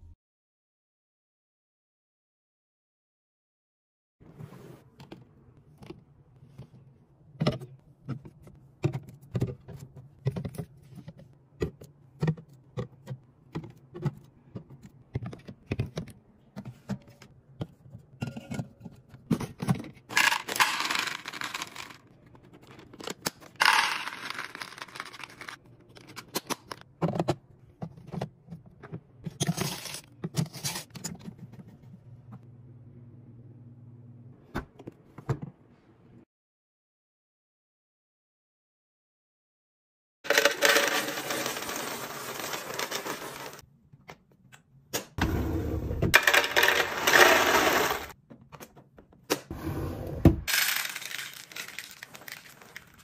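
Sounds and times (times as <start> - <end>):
containers clicking and knocking: 7.4 - 30.4, 40.3 - 43.6, 46.2 - 48.2, 50.5 - 53.0
packaging rustling: 50.5 - 53.0.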